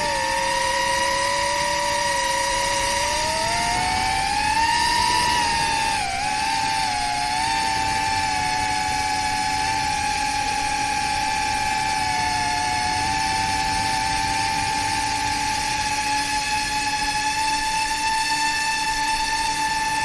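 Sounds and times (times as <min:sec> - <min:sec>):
drone motors whining: 0:00.0 - 0:20.0.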